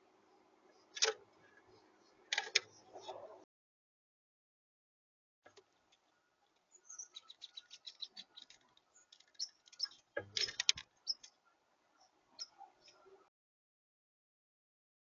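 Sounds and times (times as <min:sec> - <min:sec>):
birds chirping: 0:00.0 - 0:03.4, 0:05.5 - 0:13.3.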